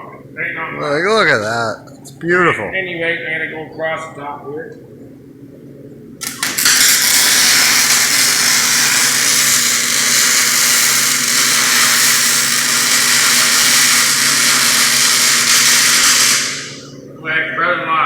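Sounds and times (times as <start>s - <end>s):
low electrical hum: 0.0s - 18.0s
arc welding hiss: 6.2s - 17.0s.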